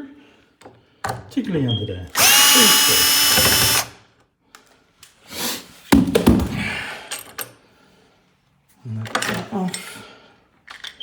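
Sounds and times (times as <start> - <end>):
power screwdriver running: 2.2 - 4.0.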